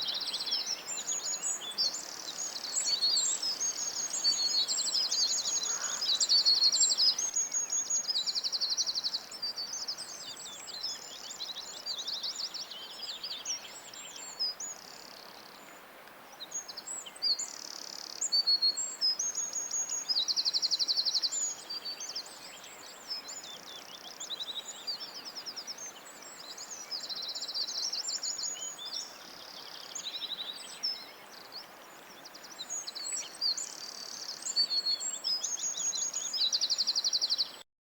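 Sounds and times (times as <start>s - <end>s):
small birds chirping: 0.0s - 15.8s.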